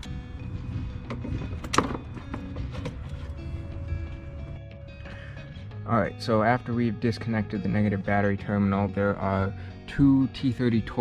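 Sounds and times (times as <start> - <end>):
hand tools clicking and knocking: 0.0 - 3.4
background music: 0.0 - 11.0.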